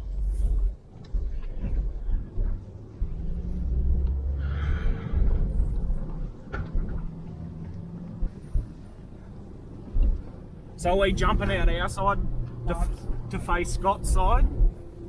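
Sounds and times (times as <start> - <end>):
vehicle knocks and jolts: 0.0 - 10.4
off-road vehicle rumbling: 0.0 - 15.0.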